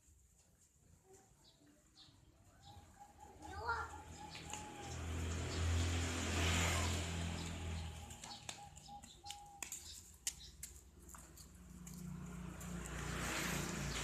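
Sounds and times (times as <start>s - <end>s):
doves cooing: 2.6s - 5.0s.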